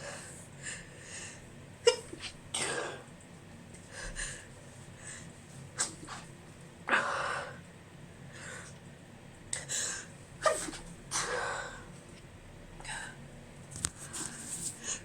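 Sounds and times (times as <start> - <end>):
woman breathing: 0.0 - 1.5, 3.8 - 5.4, 9.6 - 10.1
woman sneezing: 10.4 - 11.3.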